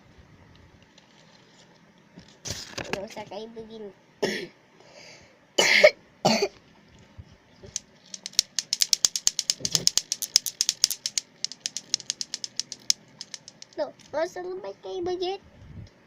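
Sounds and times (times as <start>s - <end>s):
person coughing: 5.6s - 6.5s
clacker balls clicking: 7.7s - 14.2s.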